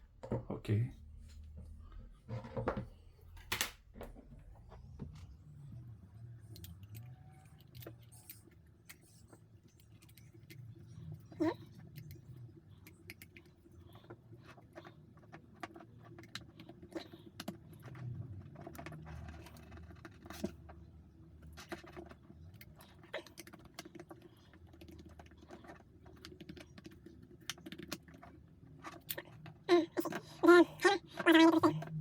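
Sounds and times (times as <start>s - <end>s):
low background hum: 0.0s - 32.0s
small parts clicking and tapping: 6.5s - 32.0s.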